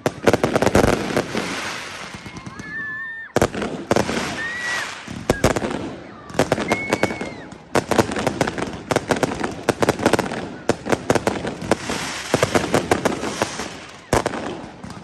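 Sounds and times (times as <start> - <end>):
firework whistle: 0.0 - 5.8, 6.4 - 7.7
fireworks bangs and crackles: 0.0 - 15.0.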